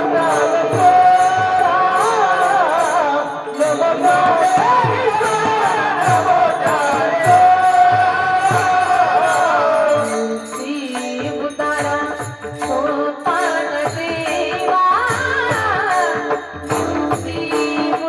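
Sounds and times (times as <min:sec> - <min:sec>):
person singing long held notes: 0:00.0 - 0:15.0
hand cymbals striking: 0:00.0 - 0:18.0
harmonium: 0:00.0 - 0:18.0.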